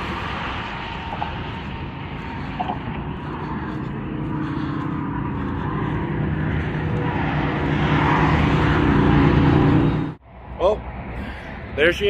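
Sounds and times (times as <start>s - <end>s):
engine drone: 0.0s - 11.9s.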